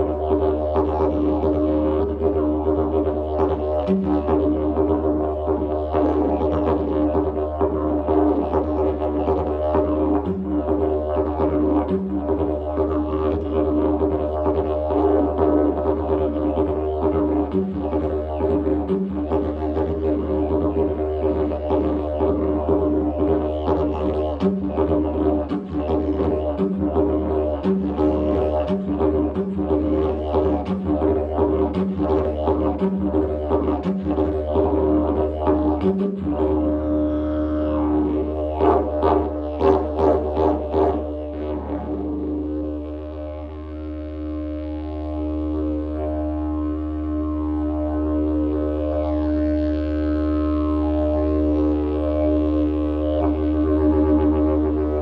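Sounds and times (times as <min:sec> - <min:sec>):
didgeridoo drone: 0:00.0 - 0:55.0.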